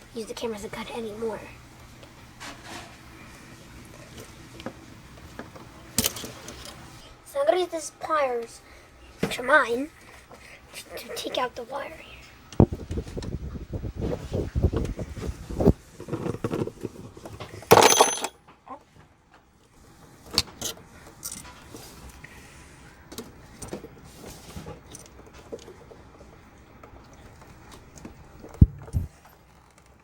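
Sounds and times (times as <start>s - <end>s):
pliers clinking on metal: 17.7s - 18.3s.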